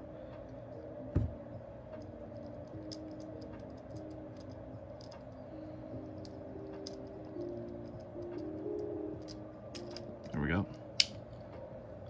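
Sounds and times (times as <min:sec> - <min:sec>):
toy car parts clicking: 0:09.2 - 0:10.1.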